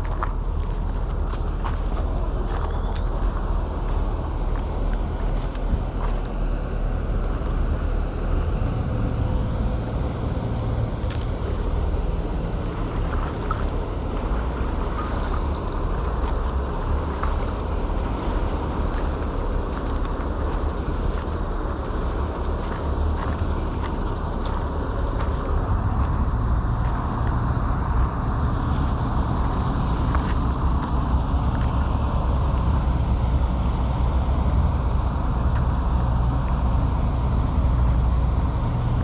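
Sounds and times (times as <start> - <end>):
heavy engine rumbling: 0.0 - 39.0.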